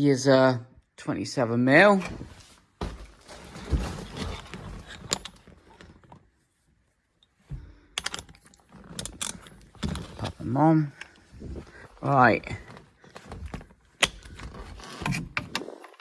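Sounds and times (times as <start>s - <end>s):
rustling: 2.0s - 7.0s.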